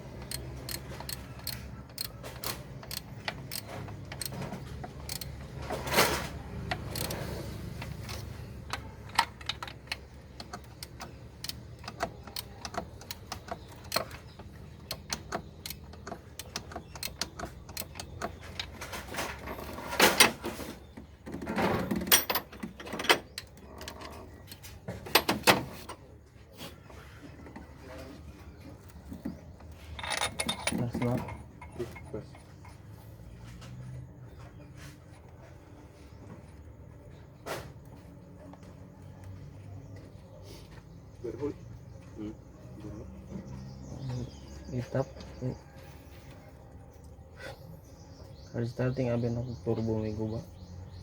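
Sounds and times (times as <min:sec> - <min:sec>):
tools and metal parts clanking: 0:00.0 - 0:26.0, 0:27.3 - 0:34.0.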